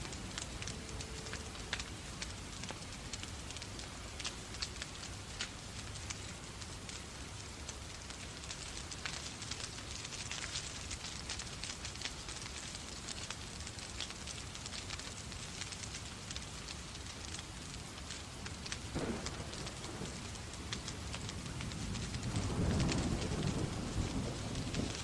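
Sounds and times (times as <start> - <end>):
rain hiss: 0.0 - 25.0
sharp fire pops: 0.0 - 25.0
wood fire crackling: 0.0 - 25.0.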